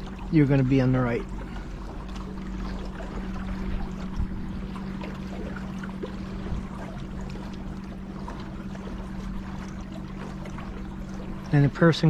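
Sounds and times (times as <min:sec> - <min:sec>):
low hum: 0:00.0 - 0:12.0
water drips: 0:00.0 - 0:12.0
water trickling and splashing: 0:00.0 - 0:12.0.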